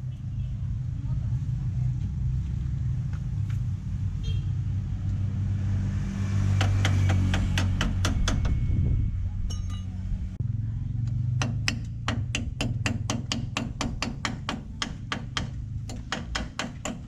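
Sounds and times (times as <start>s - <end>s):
sharp knocks: 6.6s - 8.6s, 11.4s - 17.0s.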